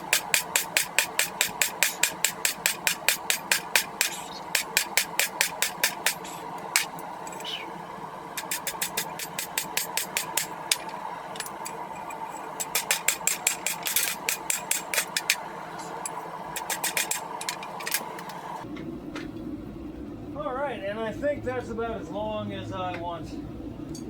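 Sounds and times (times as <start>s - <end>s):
hammer striking metal on anvil: 0.0s - 6.9s, 12.6s - 15.4s
steady mechanical hum: 0.0s - 24.0s.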